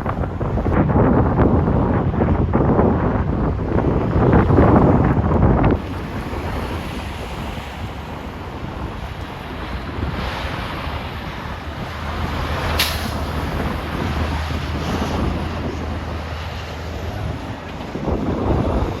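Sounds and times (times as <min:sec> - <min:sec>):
highway traffic: 0:00.0 - 0:19.0
wind buffeting microphone: 0:00.0 - 0:19.0
passing vehicle drone: 0:05.7 - 0:19.0
short sharp crack: 0:12.7 - 0:13.3.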